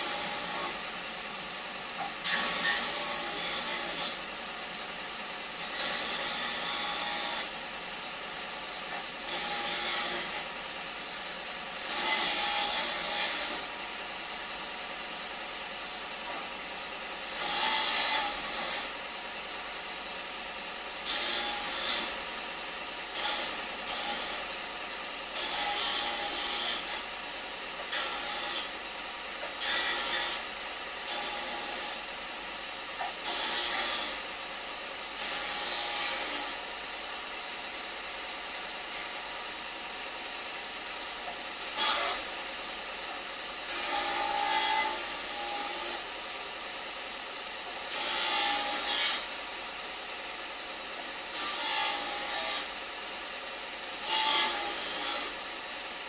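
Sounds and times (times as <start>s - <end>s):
tool working wood: 0.0s - 0.9s, 1.9s - 4.3s, 5.5s - 7.6s, 8.9s - 10.6s, 11.8s - 13.9s, 17.2s - 19.0s, 21.0s - 22.2s, 23.1s - 24.5s, 25.3s - 32.1s, 33.0s - 34.2s, 41.2s - 46.1s, 47.7s - 49.3s, 51.3s - 52.7s, 53.9s - 55.5s.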